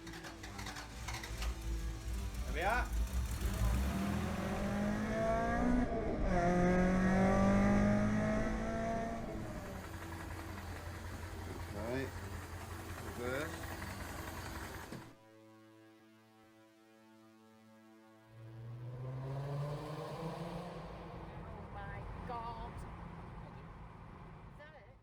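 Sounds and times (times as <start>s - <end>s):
car engine accelerating: 0.0s - 15.2s, 18.3s - 24.8s
soft synth music: 15.1s - 24.2s.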